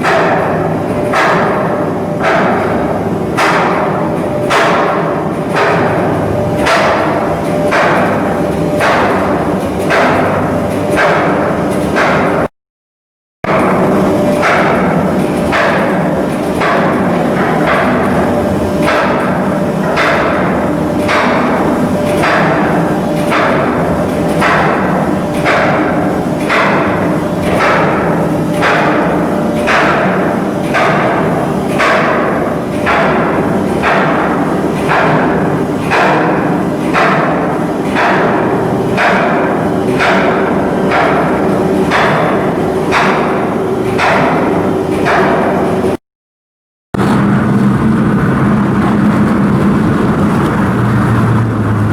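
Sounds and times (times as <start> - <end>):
heavy knocks: 13.5 - 46.0
steady low hum: 13.5 - 46.0, 47.0 - 51.9.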